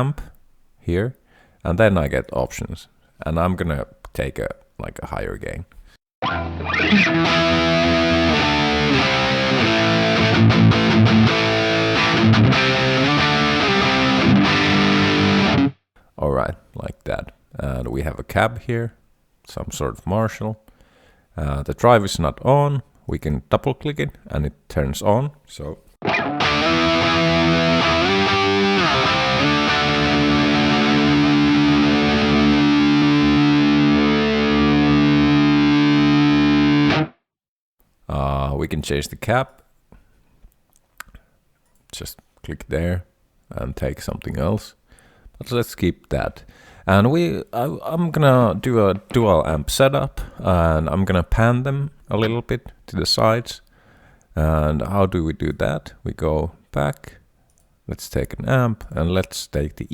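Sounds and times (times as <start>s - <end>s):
distorted electric guitar: 6.2s - 15.8s, 26.0s - 37.2s.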